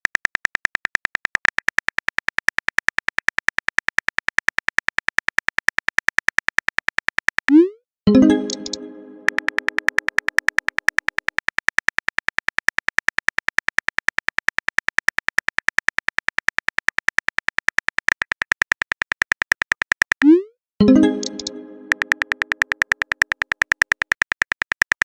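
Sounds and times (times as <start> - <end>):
phone keyboard typing clicks: 8.3 - 20.4, 21.0 - 25.0.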